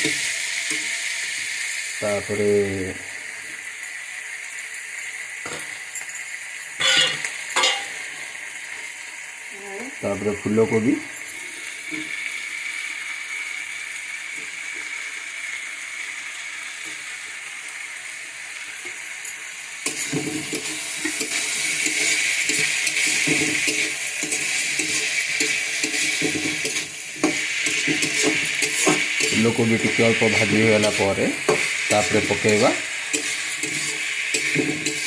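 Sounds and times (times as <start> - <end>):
vegetables sizzling in oil: 0.0 - 35.0
spatula scraping pan: 6.8 - 8.0, 20.5 - 35.0.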